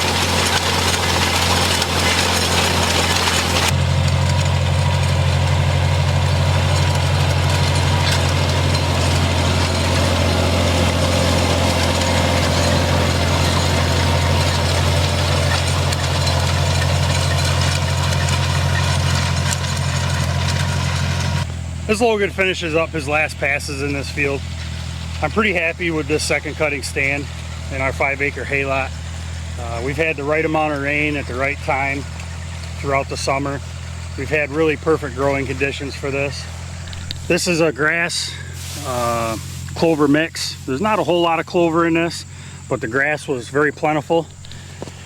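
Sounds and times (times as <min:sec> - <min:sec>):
tractor engine humming: 0:00.0 - 0:45.0
hiss: 0:38.4 - 0:39.9.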